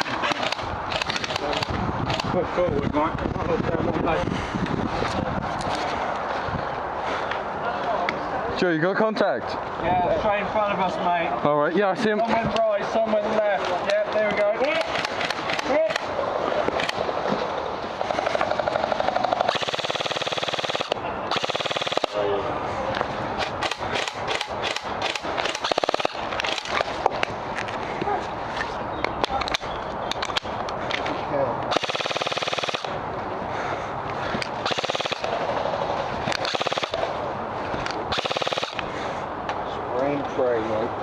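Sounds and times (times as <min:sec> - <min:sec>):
airsoft gun full auto bursts: 0:19.2 - 0:22.2, 0:23.6 - 0:26.6, 0:31.7 - 0:33.0, 0:34.6 - 0:35.3, 0:36.4 - 0:37.0, 0:38.1 - 0:38.8.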